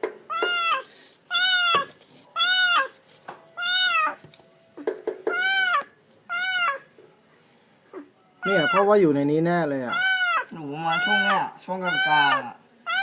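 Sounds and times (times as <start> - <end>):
kitten meowing: 0.3 - 3.0, 3.6 - 4.2, 5.3 - 6.9, 8.0 - 8.9, 9.9 - 13.0.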